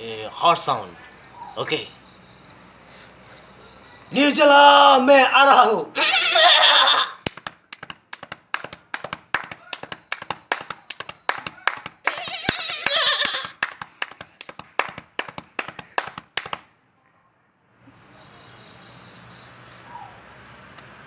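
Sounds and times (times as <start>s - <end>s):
man imitating horse neigh: 6.0s - 7.2s, 12.1s - 13.5s
man clicking like hoofbeats: 7.2s - 16.7s.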